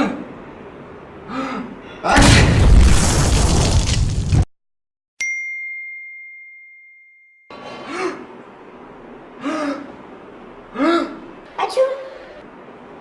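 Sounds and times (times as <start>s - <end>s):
bell-like ding: 5.2s - 7.5s.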